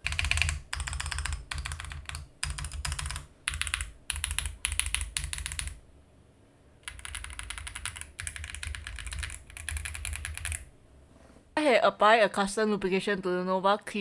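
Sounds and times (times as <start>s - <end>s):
typing on mechanical keyboard: 0.0s - 5.8s, 6.8s - 10.7s.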